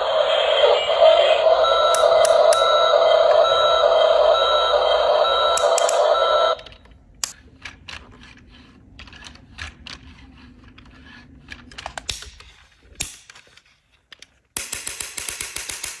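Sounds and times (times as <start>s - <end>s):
electronic tune: 0.0s - 6.6s.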